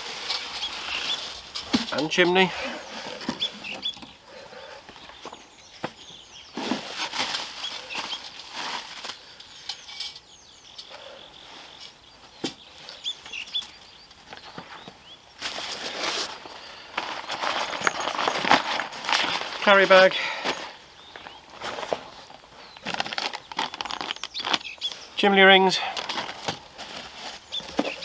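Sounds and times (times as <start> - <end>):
packaging rustling: 15.4 - 20.7, 21.6 - 25.0, 25.8 - 28.0.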